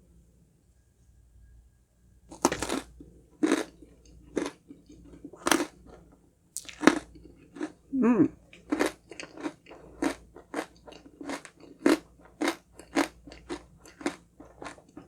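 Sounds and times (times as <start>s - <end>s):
crisp chewing crunches: 2.3s - 7.8s, 8.5s - 15.0s.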